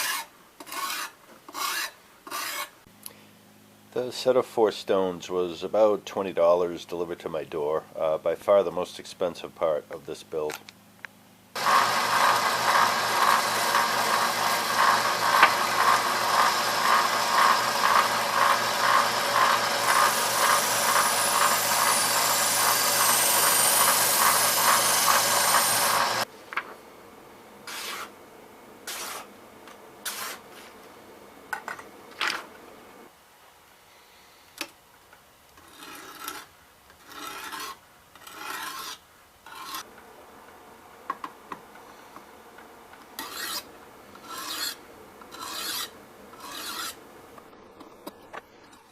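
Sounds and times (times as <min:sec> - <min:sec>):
knife scraping on whetstone: 0:00.0 - 0:02.8, 0:27.7 - 0:28.1, 0:28.9 - 0:29.3, 0:30.0 - 0:30.4, 0:35.6 - 0:39.9, 0:43.2 - 0:47.0.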